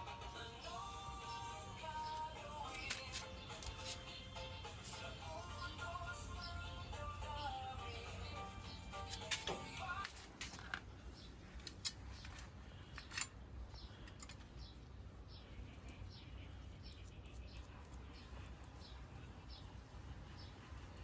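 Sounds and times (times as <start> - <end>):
bird chirping: 5.3 - 9.8, 12.1 - 21.0.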